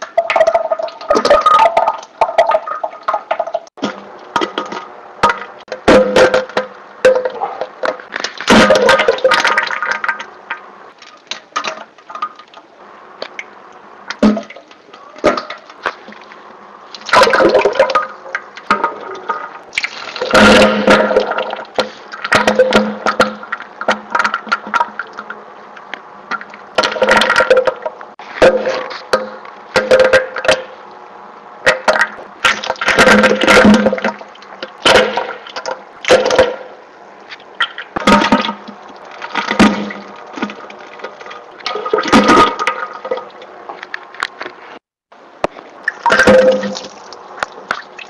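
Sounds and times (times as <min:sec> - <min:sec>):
steady background hum: 0:00.0 - 0:48.0.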